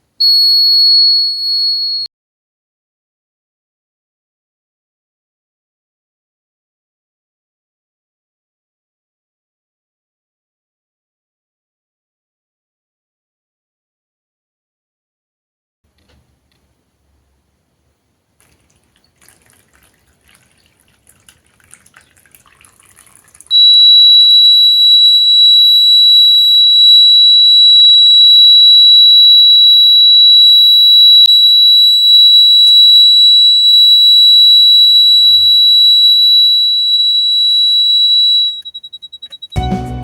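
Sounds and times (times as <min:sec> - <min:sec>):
high-pitched buzzer tone: 0:00.2 - 0:02.1, 0:23.5 - 0:40.0.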